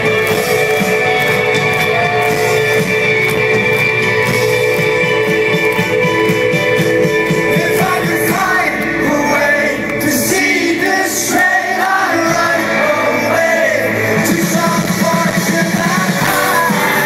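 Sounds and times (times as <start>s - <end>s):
rock band playing live: 0.0s - 17.0s
male lead singer: 7.0s - 17.0s.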